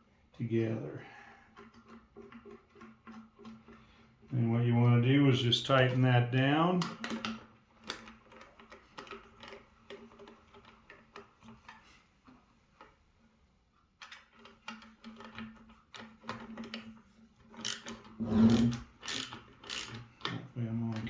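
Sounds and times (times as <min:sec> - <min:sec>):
ratchet wrench clicking: 0:17.6 - 0:20.0.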